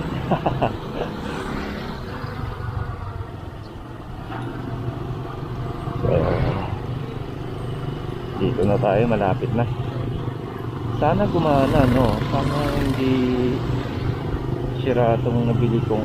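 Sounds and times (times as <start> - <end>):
road and wind noise: 0.0 - 16.0.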